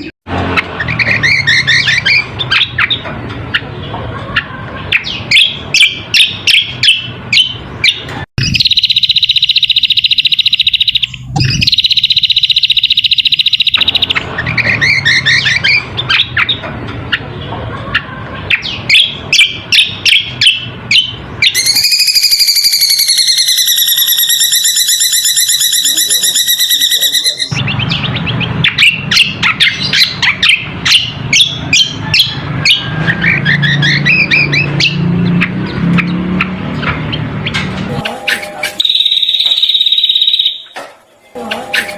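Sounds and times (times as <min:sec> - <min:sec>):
bird chirping: 0:00.0 - 0:40.8
buzzy bird trill: 0:04.9 - 0:16.6, 0:18.5 - 0:36.2, 0:38.0 - 0:40.8.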